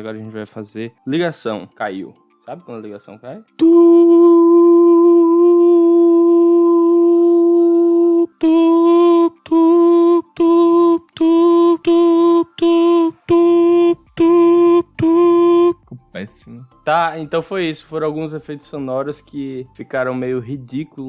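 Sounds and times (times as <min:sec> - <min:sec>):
man humming a steady tone: 0:03.6 - 0:15.8
man humming short beeps: 0:03.6 - 0:15.9.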